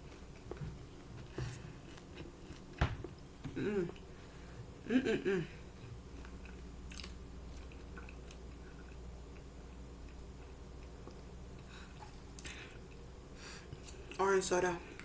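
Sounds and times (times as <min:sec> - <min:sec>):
steady low hum: 0:00.0 - 0:15.0
person chewing crispy chicken: 0:05.8 - 0:13.1.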